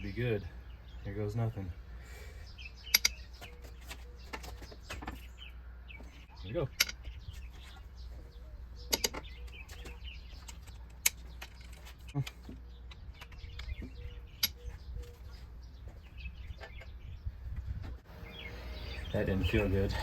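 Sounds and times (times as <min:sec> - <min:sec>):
birds chirping faintly: 0:00.0 - 0:20.0
low hum: 0:12.6 - 0:20.0.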